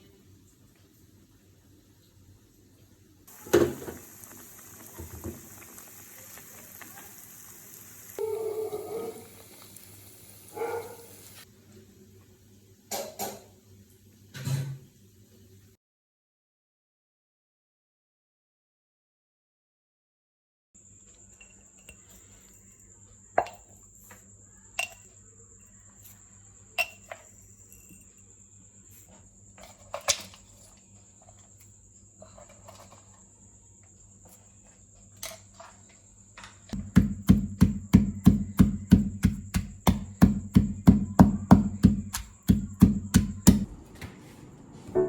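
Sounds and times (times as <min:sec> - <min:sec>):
sharp knocking: 0:36.8 - 0:43.7.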